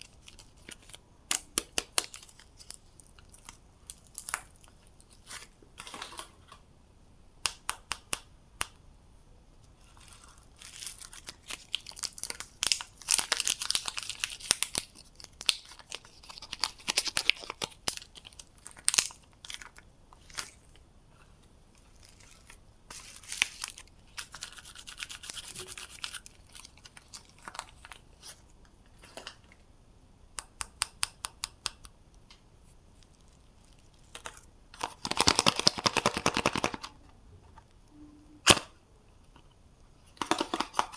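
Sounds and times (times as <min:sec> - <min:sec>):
wrapper tearing and crinkling: 0:09.9 - 0:20.8, 0:21.9 - 0:28.2, 0:33.0 - 0:36.9.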